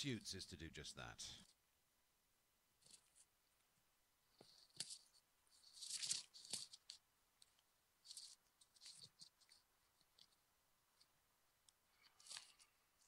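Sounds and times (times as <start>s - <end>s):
rustling: 2.8s - 11.2s, 11.9s - 13.0s.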